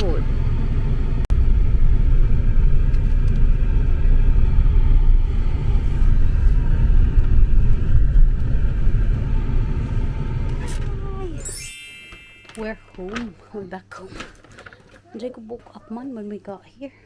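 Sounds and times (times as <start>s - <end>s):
car cabin road and engine rumble: 0.0s - 13.4s.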